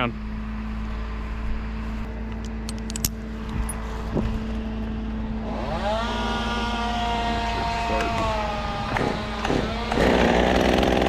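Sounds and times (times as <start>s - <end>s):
engine drone: 0.0s - 11.0s
chainsaw revving: 5.4s - 11.0s.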